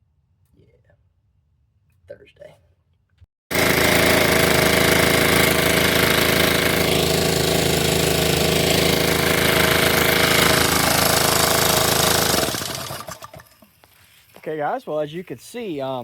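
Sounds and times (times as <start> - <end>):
small engine running steadily: 3.5 - 13.4.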